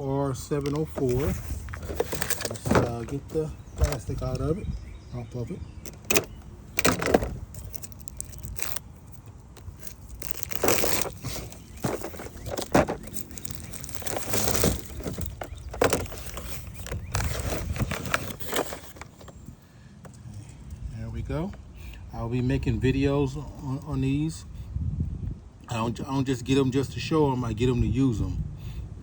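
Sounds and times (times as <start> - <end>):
plastic packaging crinkling and tearing: 0.5 - 4.3, 5.8 - 19.3.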